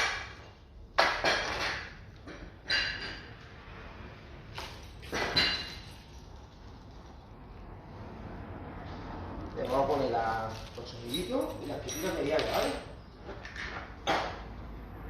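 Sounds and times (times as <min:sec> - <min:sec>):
metal parts knocking and clinking: 0:10.5 - 0:14.4.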